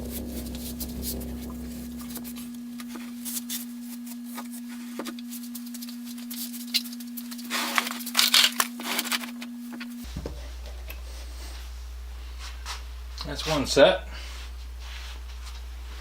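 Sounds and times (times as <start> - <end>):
steady low hum: 0.0 - 6.3, 9.5 - 16.0.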